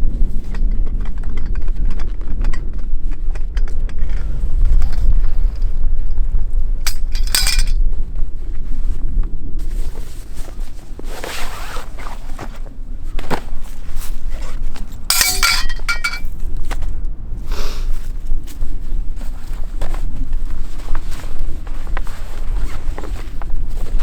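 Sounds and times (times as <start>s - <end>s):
wind on microphone: 0.0s - 24.0s
metal items clinking: 6.9s - 7.8s, 15.1s - 16.3s.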